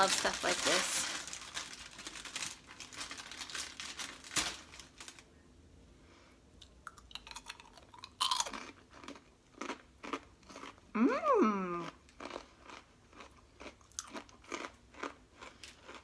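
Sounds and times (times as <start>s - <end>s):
crunchy chewing of snack: 6.6s - 10.9s, 11.8s - 16.0s.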